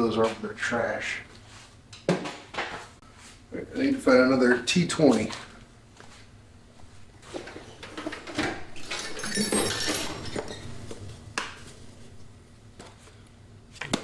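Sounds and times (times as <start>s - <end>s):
small metal pieces clinking: 7.8s - 12.2s.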